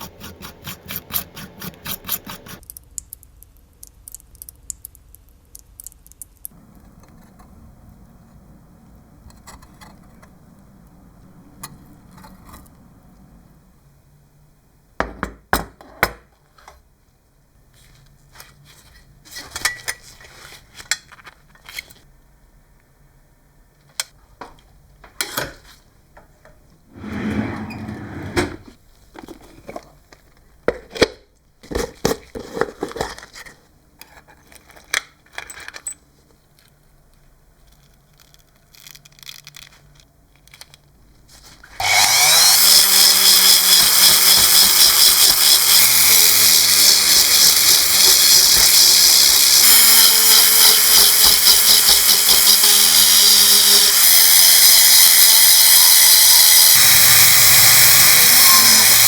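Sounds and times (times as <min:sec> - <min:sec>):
loud machine running: 0:41.8 - 0:59.0.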